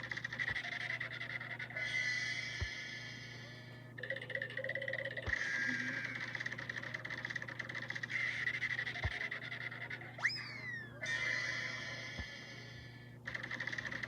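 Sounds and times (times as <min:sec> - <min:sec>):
cartoon buzzing and rattling: 0:04.0 - 0:14.0.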